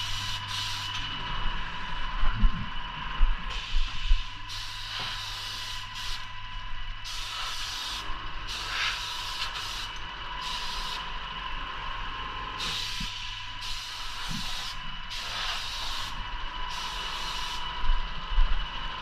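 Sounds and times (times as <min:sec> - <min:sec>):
paint sprayer hissing: 0:00.0 - 0:01.0, 0:03.5 - 0:06.3, 0:07.0 - 0:11.1, 0:12.6 - 0:17.7
steady whine and low hum: 0:00.0 - 0:19.0.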